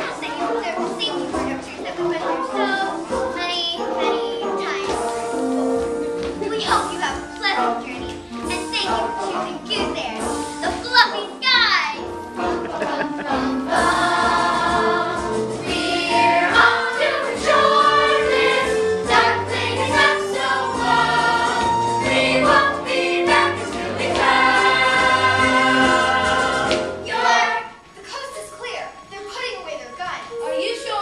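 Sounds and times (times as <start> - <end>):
musical accompaniment: 0.0 - 28.0
chorus singing: 12.2 - 28.0.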